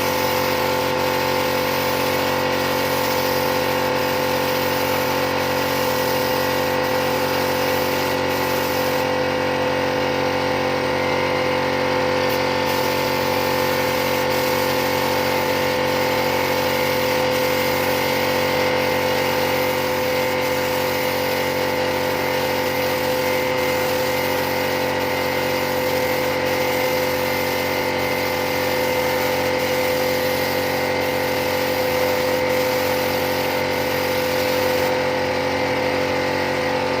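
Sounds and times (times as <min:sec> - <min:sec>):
steady machine hum: 0:00.0 - 0:37.0.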